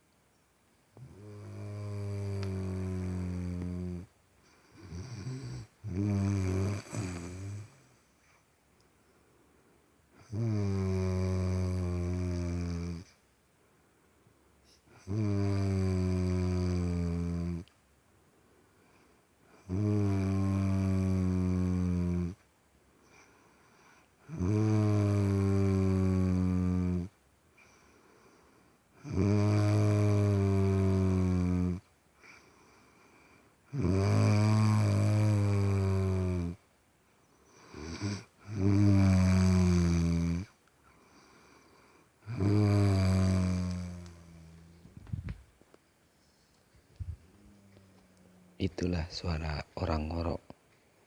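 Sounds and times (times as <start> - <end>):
person snoring: 1.0 - 4.1, 4.8 - 8.0, 10.2 - 13.1, 15.0 - 17.7, 19.6 - 22.4, 24.2 - 27.2, 29.0 - 31.8, 33.7 - 36.6, 37.6 - 40.5, 42.2 - 44.9.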